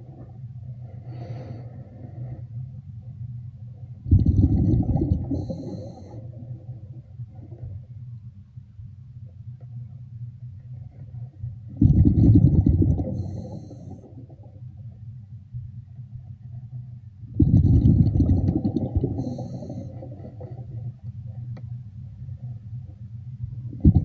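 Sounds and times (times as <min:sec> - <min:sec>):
steady low hum: 0:00.0 - 0:24.0
exhaled breath bubbling underwater: 0:04.0 - 0:06.6, 0:11.7 - 0:14.6, 0:17.3 - 0:20.8, 0:23.7 - 0:24.0.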